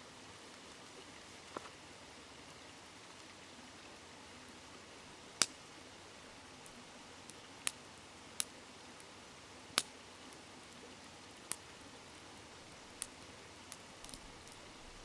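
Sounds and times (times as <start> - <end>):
river flowing: 0.0 - 15.0
campfire crackling and popping: 5.3 - 5.7, 6.6 - 9.1, 9.7 - 15.0.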